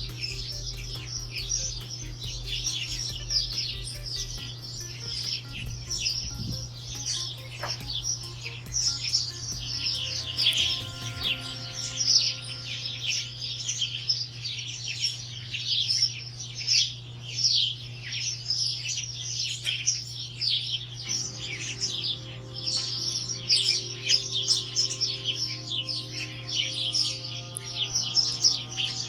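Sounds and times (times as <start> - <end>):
small birds chirping: 0.0 - 29.0
steady low hum: 0.0 - 29.0.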